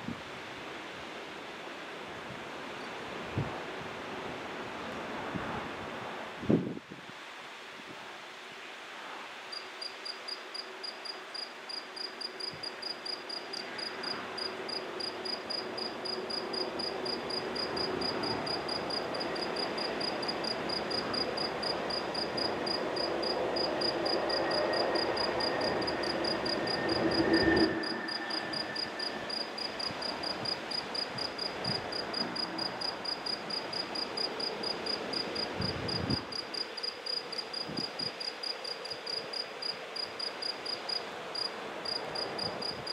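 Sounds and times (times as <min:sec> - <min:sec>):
cricket chirping: 0:09.5 - 0:42.9
rushing background noise: 0:14.2 - 0:37.2.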